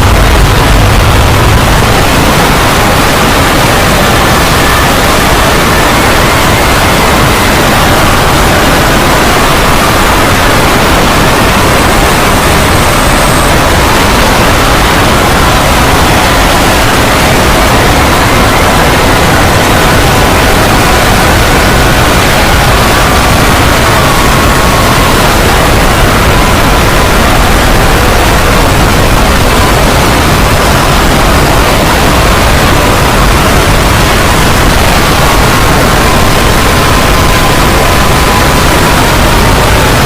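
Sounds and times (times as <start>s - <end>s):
deep rumble: 0.0s - 7.4s
loud steady rushing noise: 0.0s - 40.0s.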